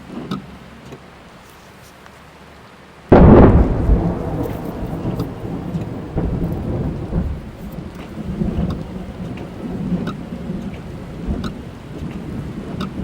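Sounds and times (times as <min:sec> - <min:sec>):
raindrop ticks: 0:02.0 - 0:13.0
rain on car body: 0:02.1 - 0:13.0
low thunder rumble: 0:03.1 - 0:13.0.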